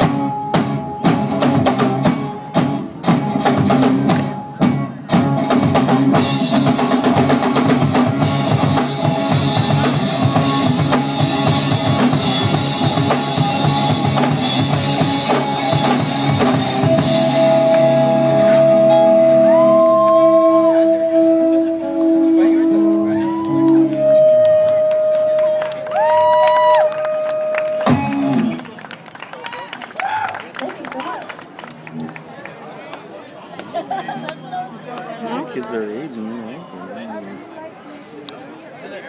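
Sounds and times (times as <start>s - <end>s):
rock band playing: 0.0s - 28.8s.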